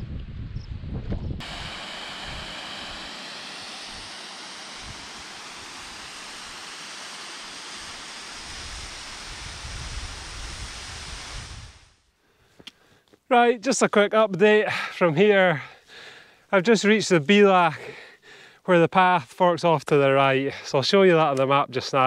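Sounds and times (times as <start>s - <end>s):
wind on microphone: 0.0s - 3.0s, 8.4s - 12.0s.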